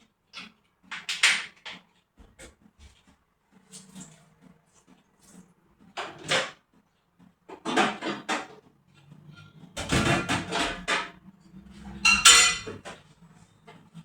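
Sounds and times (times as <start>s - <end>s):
dishes and kitchenware clattering: 7.5s - 13.1s
ringing clink: 12.1s - 12.7s.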